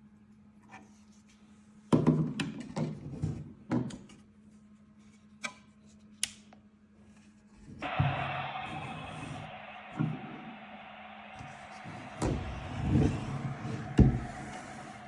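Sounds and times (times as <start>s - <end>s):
steady low hum: 7.8s - 15.0s.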